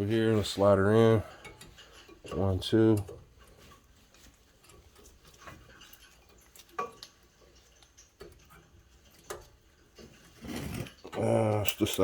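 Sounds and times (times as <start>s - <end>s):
faint metallic clicks and taps: 0.8s - 10.4s.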